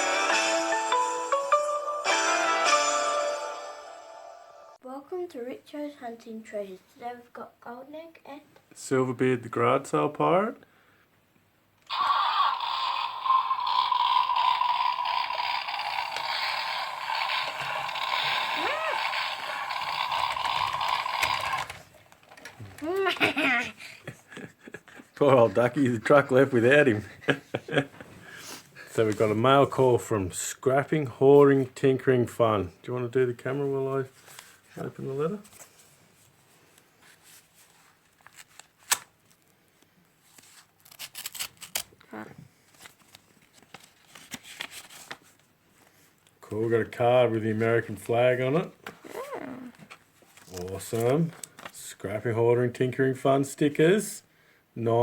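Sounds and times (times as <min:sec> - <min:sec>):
small motor whirring: 0:12.4 - 0:21.9
paper tearing: 0:15.4 - 0:21.9, 0:40.4 - 0:41.9
envelope rustling: 0:37.7 - 0:39.5, 0:42.7 - 0:45.5.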